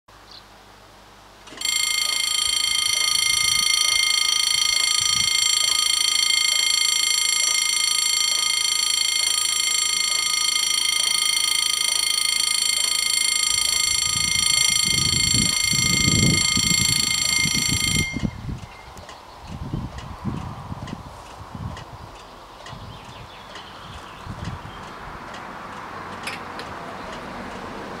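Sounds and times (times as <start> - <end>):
level crossing warning bells: 1.5 - 19.2.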